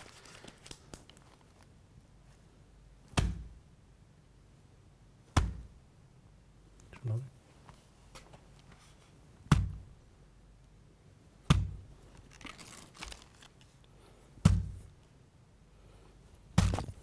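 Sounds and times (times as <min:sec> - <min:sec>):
soft rustling: 0:00.0 - 0:02.5, 0:06.9 - 0:09.3, 0:11.9 - 0:14.2
heavy punch impacts: 0:03.1 - 0:03.6, 0:05.3 - 0:05.8, 0:11.5 - 0:11.8, 0:14.4 - 0:14.9.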